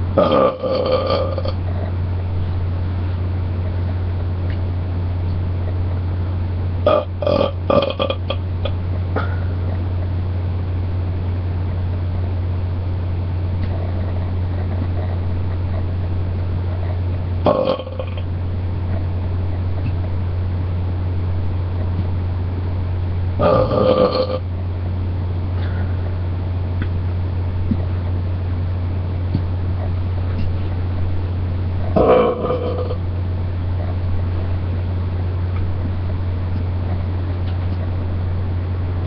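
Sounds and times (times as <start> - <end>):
steady low hum: 0.0 - 39.0
person burping: 0.2 - 1.6, 6.9 - 8.4, 17.4 - 18.2, 23.4 - 24.4, 32.0 - 33.0.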